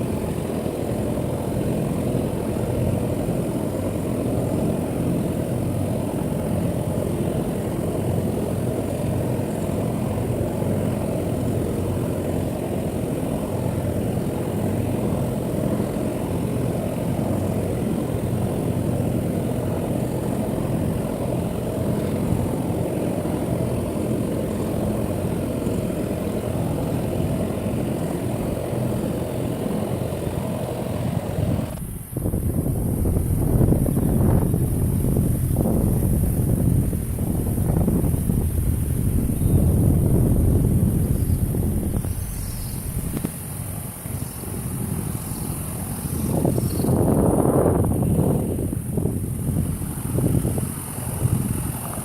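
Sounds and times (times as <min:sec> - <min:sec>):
steady engine drone: 0:00.0 - 0:52.0.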